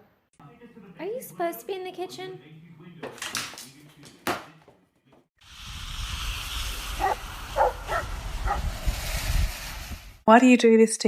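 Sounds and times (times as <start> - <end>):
steady rushing noise: 5.5 - 10.2
dog barking: 7.0 - 8.6.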